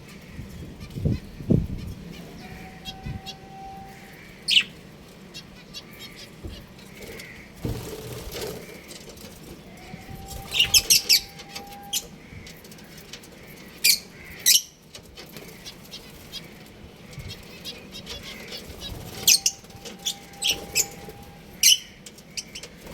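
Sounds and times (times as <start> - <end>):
small birds chirping: 0.0 - 22.9
wings fluttering: 6.5 - 14.3, 15.0 - 22.9.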